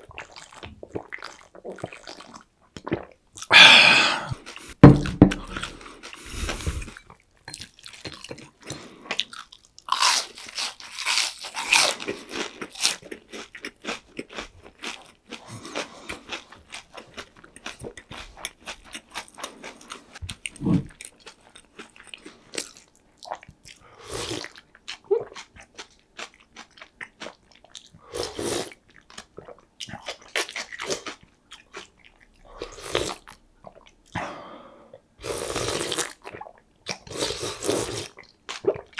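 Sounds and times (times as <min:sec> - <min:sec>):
crunchy chewing and biting: 0:09.2 - 0:22.8.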